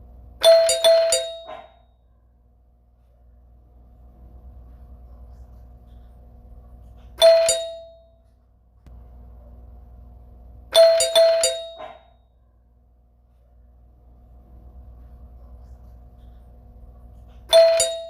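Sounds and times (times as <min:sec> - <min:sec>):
faint steady hum: 0:00.0 - 0:18.0
doorbell chimes: 0:00.4 - 0:01.7, 0:07.2 - 0:08.2, 0:10.7 - 0:12.1, 0:17.5 - 0:18.0.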